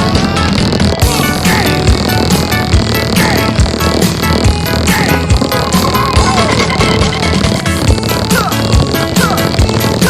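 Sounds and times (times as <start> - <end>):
electronic music: 0.0 - 10.0
kick-drum beat: 0.0 - 10.0
falling synth sweeps: 5.4 - 8.0.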